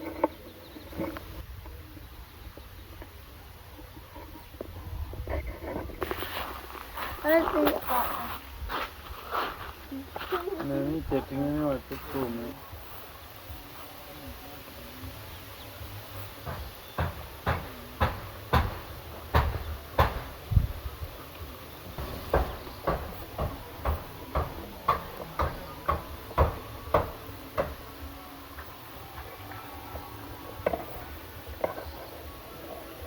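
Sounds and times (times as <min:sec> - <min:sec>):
repeated sharp knocks: 0:16.4 - 0:20.7, 0:22.0 - 0:27.9.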